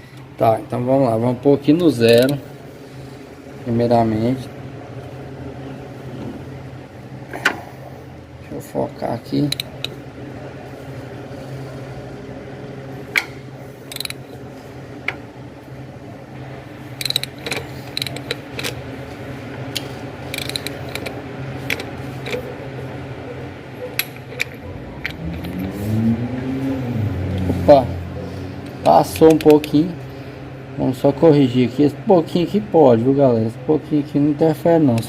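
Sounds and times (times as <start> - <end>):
steady low hum: 0.0 - 35.0
ratchet wrench clicking: 9.4 - 10.0, 13.9 - 14.2, 17.0 - 18.8, 19.8 - 22.4, 28.8 - 29.8.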